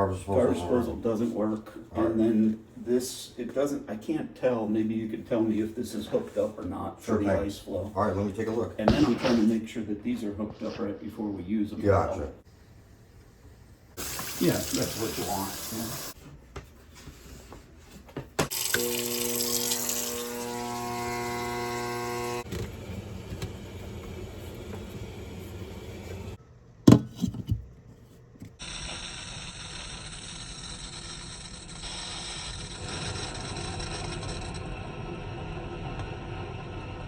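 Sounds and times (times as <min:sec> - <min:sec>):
faucet water running into sink: 0:14.0 - 0:16.2, 0:18.5 - 0:22.1.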